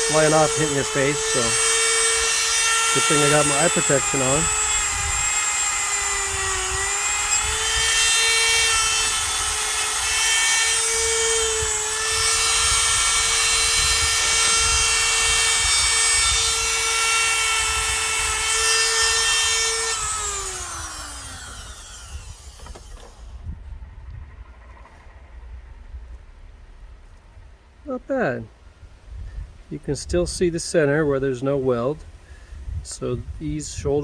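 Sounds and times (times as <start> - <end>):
grinder grinding metal: 0.0 - 23.3
grinder spinning down: 0.0 - 23.4.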